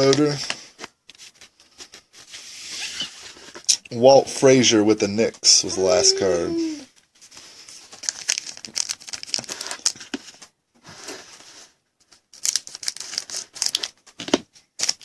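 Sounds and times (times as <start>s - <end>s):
wrapper crinkling and tearing: 7.8s - 10.2s, 12.1s - 15.0s.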